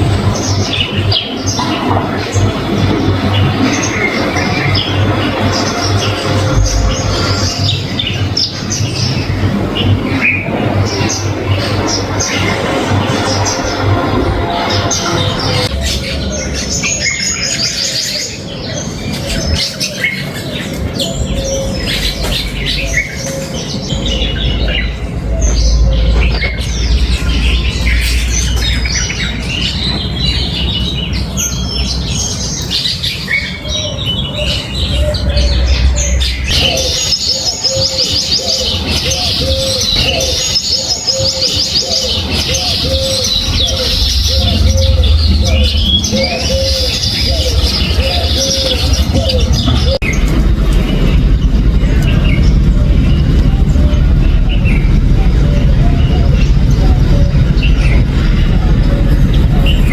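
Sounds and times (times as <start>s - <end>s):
small birds chirping: 0.0s - 59.9s
low rumble: 2.2s - 17.4s, 20.7s - 32.6s, 33.9s - 37.1s, 42.9s - 59.9s
low repeating note: 2.4s - 17.0s, 21.1s - 30.5s, 34.6s - 37.1s, 43.1s - 59.9s.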